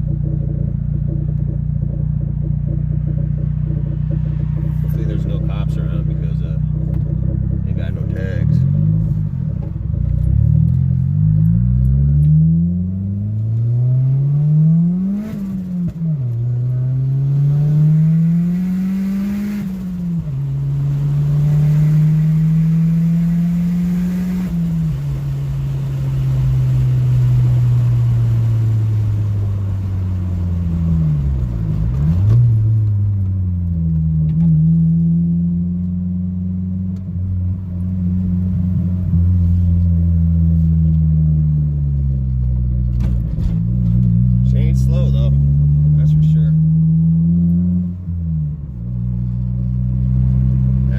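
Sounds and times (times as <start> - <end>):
car engine accelerating: 0.0 - 50.9.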